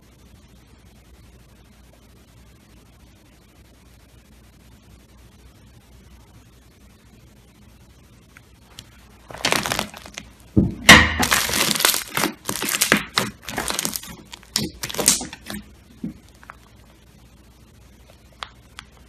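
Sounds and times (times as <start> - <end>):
slime being squeezed: 9.3 - 15.6.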